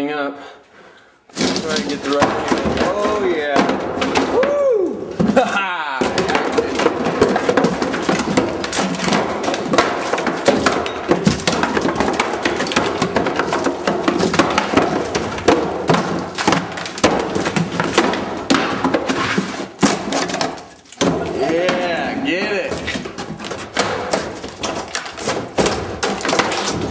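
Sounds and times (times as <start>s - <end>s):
tools breaking up wood: 1.3s - 26.9s.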